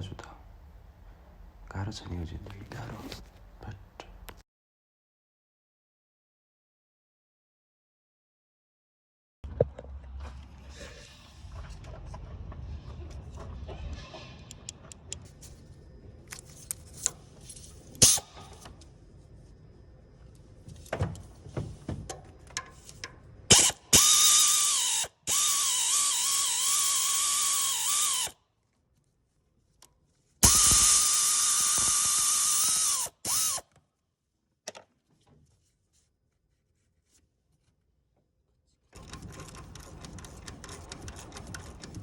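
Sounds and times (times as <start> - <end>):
cordless drill whining: 23.5 - 28.4, 30.4 - 33.7.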